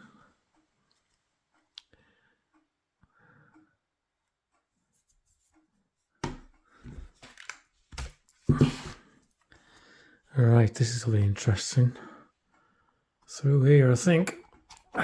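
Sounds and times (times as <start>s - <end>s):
rustles and knocks of handling: 5.0s - 9.5s.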